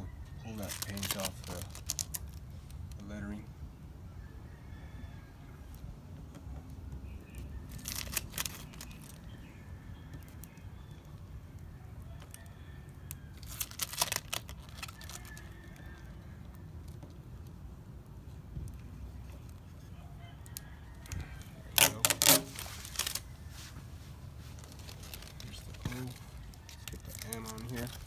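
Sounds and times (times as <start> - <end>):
tape peeling off plastic: 0.6 - 2.8, 7.7 - 9.3, 13.4 - 15.4, 21.0 - 28.0.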